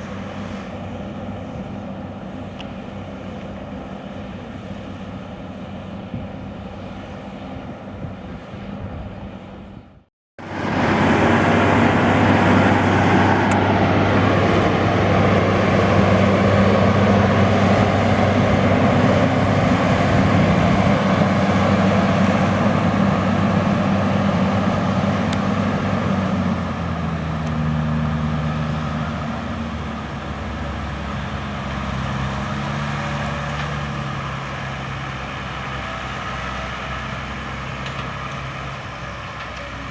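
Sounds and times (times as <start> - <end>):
tractor diesel engine under load: 10.4 - 39.9.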